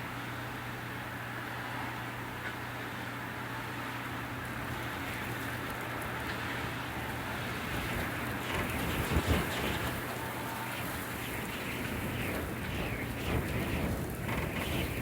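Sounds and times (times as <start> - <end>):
wind rushing outside window: 4.2 - 15.0.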